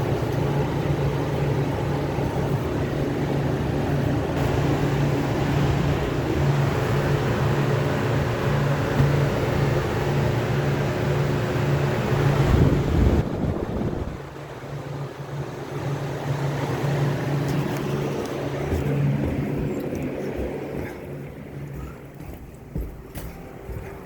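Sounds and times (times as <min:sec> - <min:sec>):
compressor humming: 0:00.0 - 0:24.0
condenser fan humming: 0:00.0 - 0:24.0.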